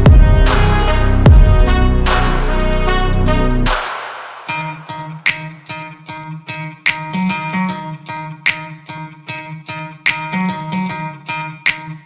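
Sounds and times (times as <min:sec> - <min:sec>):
background music: 0:00.0 - 0:05.6
short sharply struck notes: 0:00.0 - 0:05.6.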